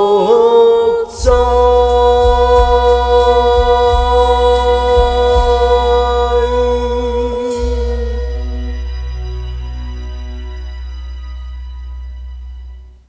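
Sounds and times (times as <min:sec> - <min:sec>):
person singing a long note: 0:00.0 - 0:08.9
backing track music: 0:00.0 - 0:13.0.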